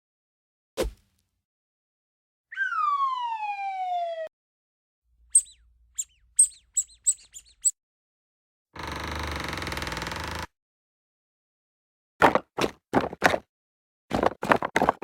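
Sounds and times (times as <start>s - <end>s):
downward sliding whistle: 2.5s - 4.3s
short high chirps: 5.3s - 7.8s.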